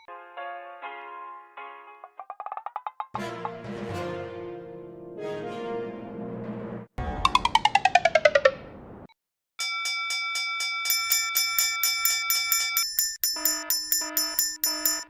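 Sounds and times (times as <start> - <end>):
level crossing bells clanging: 9.6 - 15.0.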